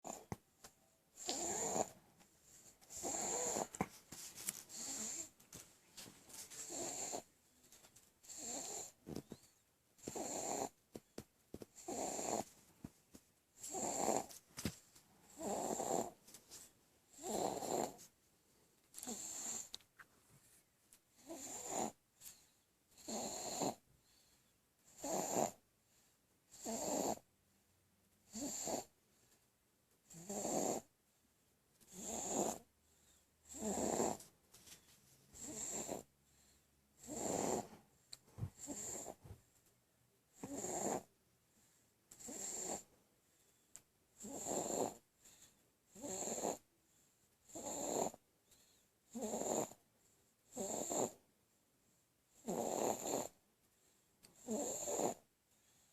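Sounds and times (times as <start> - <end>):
baby snoring: 0.0 - 0.4, 1.2 - 2.0, 2.6 - 3.9, 4.7 - 5.3, 6.6 - 7.3, 8.2 - 10.8, 11.7 - 12.5, 13.6 - 14.4, 15.3 - 16.2, 17.1 - 18.1, 19.0 - 19.8, 21.2 - 22.0, 23.0 - 23.8, 24.9 - 25.6, 26.5 - 27.2, 28.3 - 28.9, 30.1 - 30.9, 31.9 - 32.7, 33.5 - 34.2, 35.4 - 36.1, 37.0 - 37.8, 38.5 - 39.2, 40.4 - 41.1, 42.2 - 42.9, 44.2 - 45.0, 45.9 - 46.6, 47.5 - 48.2, 49.1 - 49.8, 50.5 - 51.2, 52.4 - 53.4, 54.4 - 55.2
quiet breaths: 0.0 - 55.9.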